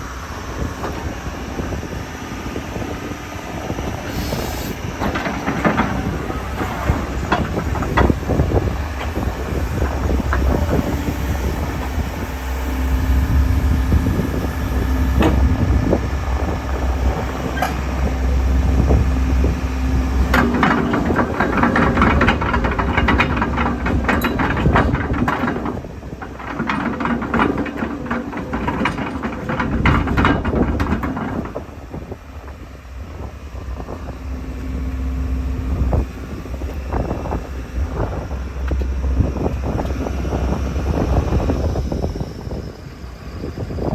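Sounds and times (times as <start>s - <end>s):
excavator diesel engine rumbling: 0.0s - 43.9s
rattling metallic clatter: 20.2s - 31.6s.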